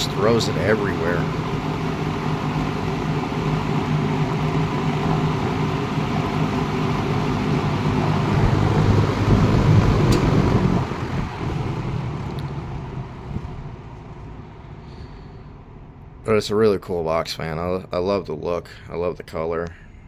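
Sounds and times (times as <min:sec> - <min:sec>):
box fan running: 0:00.0 - 0:20.0
fan switch click: 0:09.8 - 0:10.6.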